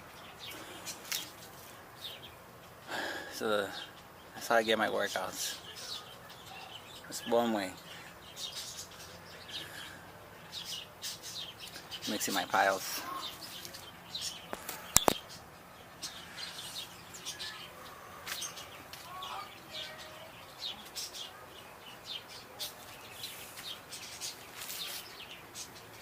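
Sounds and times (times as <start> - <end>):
small birds chirping: 0.0 - 26.0
sharp clicks: 14.5 - 15.2.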